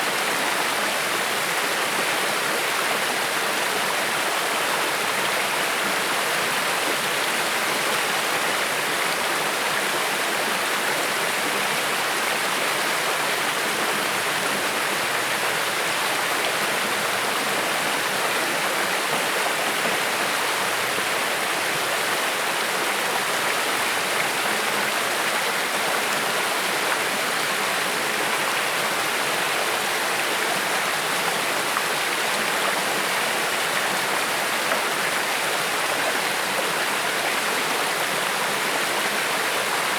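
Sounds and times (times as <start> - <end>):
creek flowing over rocks: 0.0 - 39.9.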